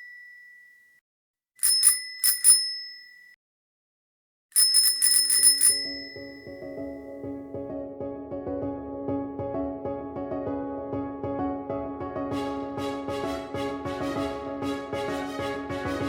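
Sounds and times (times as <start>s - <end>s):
bicycle bell ringing: 0.0s - 0.9s, 1.6s - 3.4s, 4.6s - 6.6s
music: 6.2s - 16.0s.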